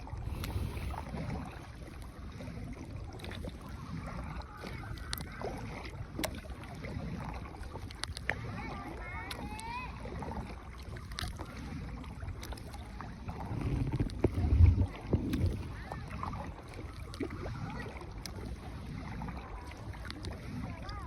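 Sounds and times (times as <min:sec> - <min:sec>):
wind on microphone: 0:00.0 - 0:01.9, 0:13.0 - 0:18.0
paddle splashing: 0:00.0 - 0:21.0
water noise: 0:00.0 - 0:21.0
low rumble: 0:13.2 - 0:16.7.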